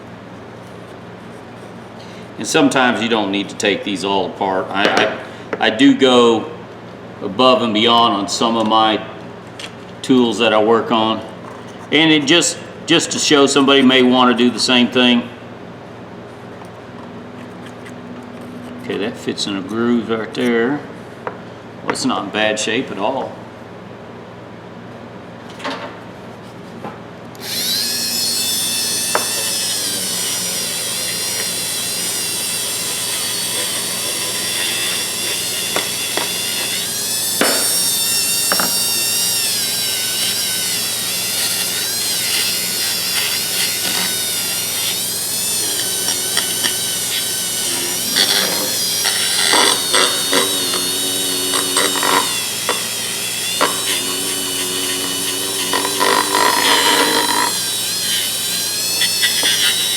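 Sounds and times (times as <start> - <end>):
electric power tool running: 27.4 - 59.9.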